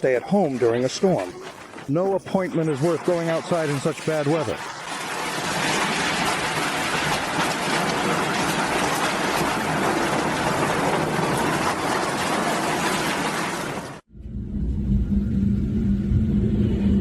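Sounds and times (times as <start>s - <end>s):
wind and rain rushing: 0.5s - 14.1s.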